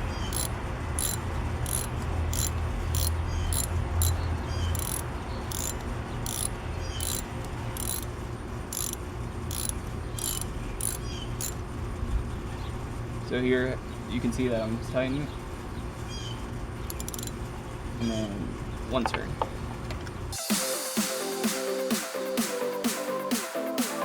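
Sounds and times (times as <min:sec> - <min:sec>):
steady low hum: 0:00.0 - 0:20.4
ratchet clicking: 0:00.2 - 0:08.1, 0:08.7 - 0:11.6, 0:16.8 - 0:17.4.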